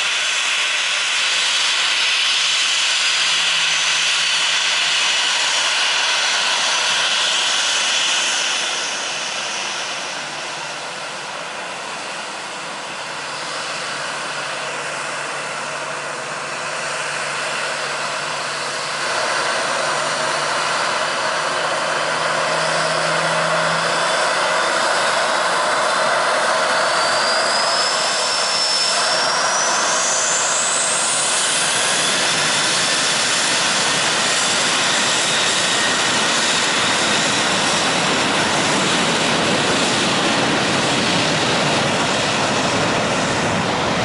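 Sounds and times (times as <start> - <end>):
jet engines roaring: 0.0 - 44.0
high whine rising in pitch: 3.1 - 5.7, 18.9 - 33.2.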